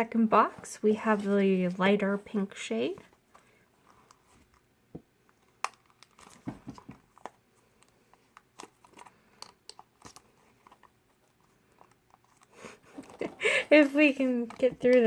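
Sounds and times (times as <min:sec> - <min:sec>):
packaging crinkling and tearing: 0:05.4 - 0:13.3.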